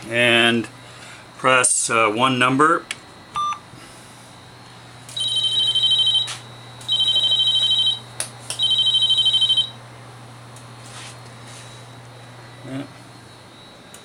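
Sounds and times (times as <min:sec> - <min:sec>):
electronic telephone ringing: 0:05.2 - 0:09.8.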